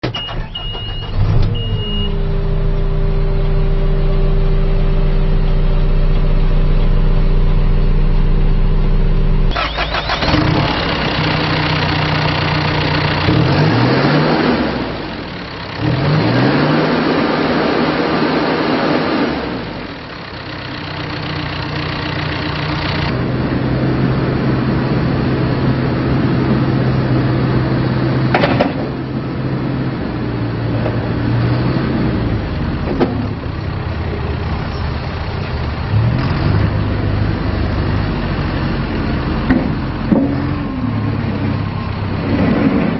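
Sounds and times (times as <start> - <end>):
short high beep: 0.0 - 2.2
diesel engine running: 0.0 - 42.9.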